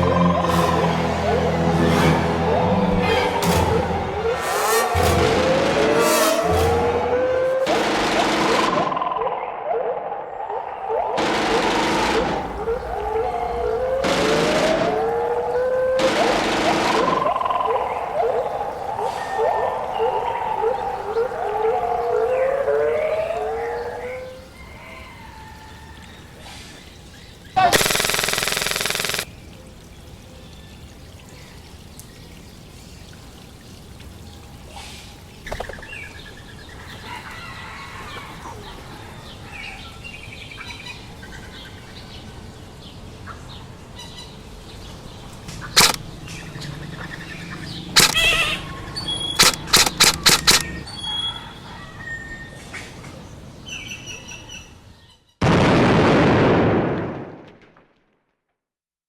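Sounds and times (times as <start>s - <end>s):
sharp cracks: 11.2s - 12.7s, 14.0s - 15.2s, 16.0s - 17.6s, 27.6s - 29.3s, 45.8s - 46.1s, 48.0s - 48.4s, 49.4s - 50.8s.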